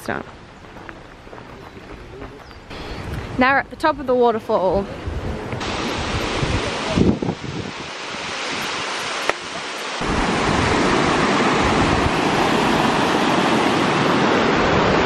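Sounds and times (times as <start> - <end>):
waterfall rushing: 5.6 - 15.0.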